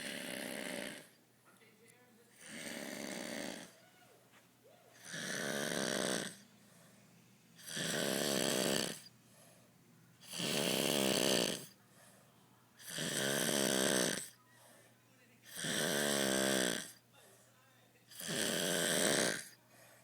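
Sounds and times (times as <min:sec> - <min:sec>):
man snoring loudly: 0:00.0 - 0:01.1, 0:02.4 - 0:03.8, 0:05.0 - 0:06.4, 0:07.6 - 0:09.0, 0:10.2 - 0:11.7, 0:12.8 - 0:14.3, 0:15.5 - 0:17.0, 0:18.1 - 0:19.5.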